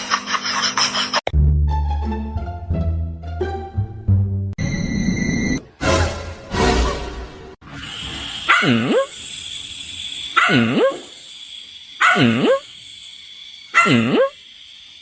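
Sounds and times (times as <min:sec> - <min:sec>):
dog barking: 0:08.5 - 0:09.1, 0:10.4 - 0:11.1, 0:12.0 - 0:12.7, 0:13.7 - 0:14.3.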